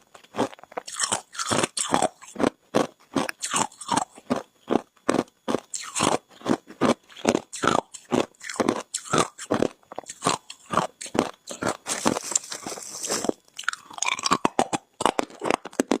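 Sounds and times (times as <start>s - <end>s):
ice being chewed: 0.0s - 16.0s.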